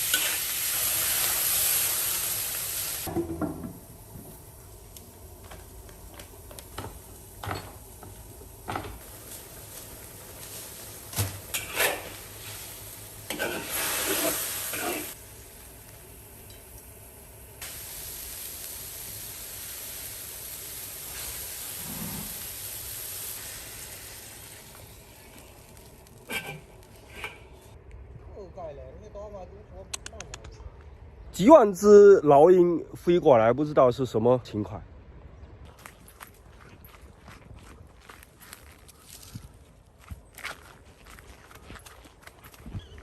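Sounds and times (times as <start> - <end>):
food frying hiss: 0.0 - 27.7.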